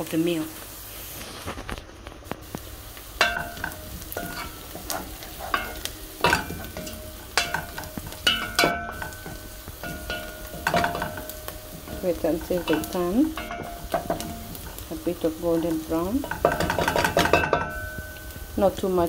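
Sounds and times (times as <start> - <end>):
onions frying in oil: 0.0 - 19.0
spoon knocking against pot: 3.2 - 14.8, 15.6 - 18.2.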